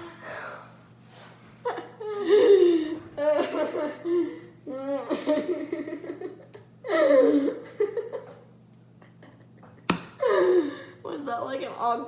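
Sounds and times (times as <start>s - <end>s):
children laughing and giggling: 2.3s - 9.6s.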